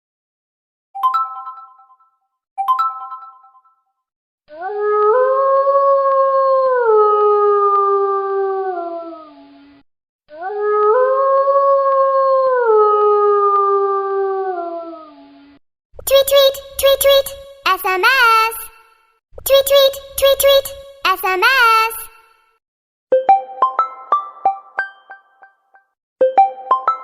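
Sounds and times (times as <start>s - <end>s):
bell-like notification chimes: 1.0s - 3.8s, 23.2s - 27.0s.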